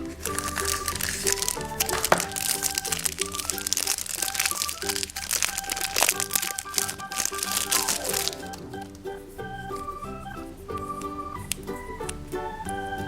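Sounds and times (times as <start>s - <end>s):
background music with keyboard: 0.0s - 13.0s
wrapper crinkling and tearing: 0.1s - 8.6s.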